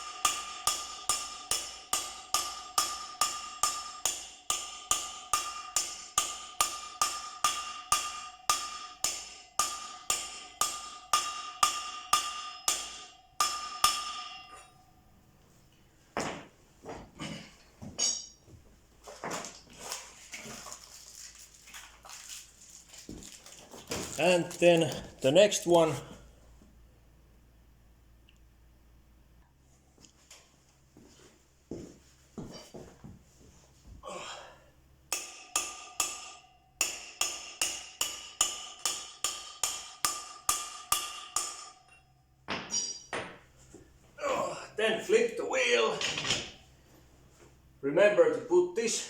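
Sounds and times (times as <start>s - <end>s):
hammer striking metal socket: 35.1s - 43.4s.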